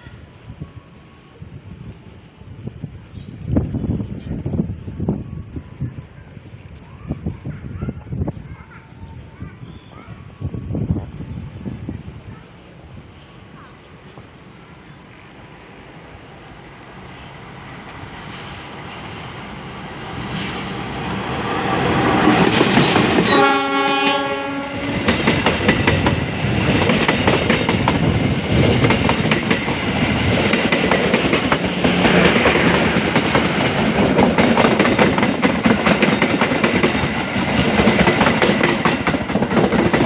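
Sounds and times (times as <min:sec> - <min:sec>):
locomotive approaching: 0:00.1 - 0:40.0
train wheels clattering on rails: 0:21.7 - 0:23.9, 0:24.8 - 0:40.0
train horn: 0:23.2 - 0:25.1.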